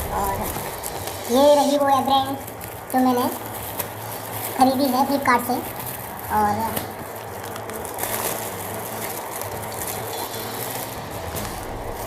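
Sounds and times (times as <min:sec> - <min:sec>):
low hum: 0:00.0 - 0:02.9
packaging rustling and crinkling: 0:00.0 - 0:12.0.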